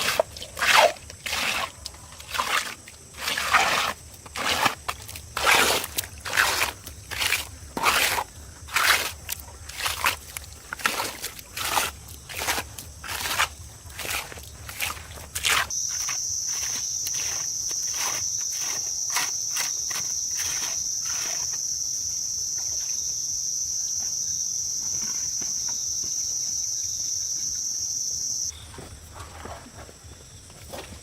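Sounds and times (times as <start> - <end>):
high-pitched insect drone: 15.7 - 28.6.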